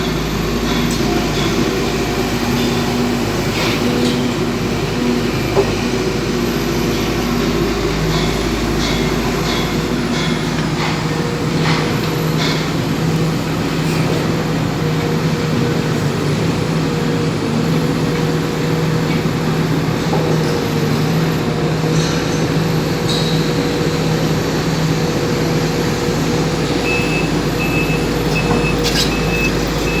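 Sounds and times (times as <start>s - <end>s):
excavator diesel engine running: 0.0s - 30.0s
repeating beeping alarm: 26.8s - 30.0s.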